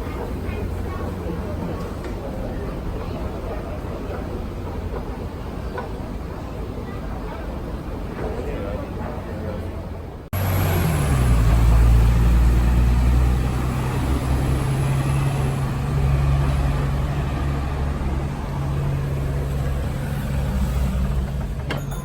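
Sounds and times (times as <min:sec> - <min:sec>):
vehicle engine rumble: 0:10.1 - 0:22.0.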